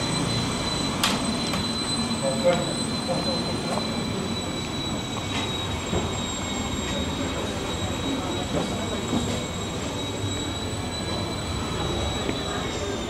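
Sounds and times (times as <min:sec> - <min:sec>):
high-pitched whine: 0:00.0 - 0:13.0
faint voices: 0:01.2 - 0:13.0.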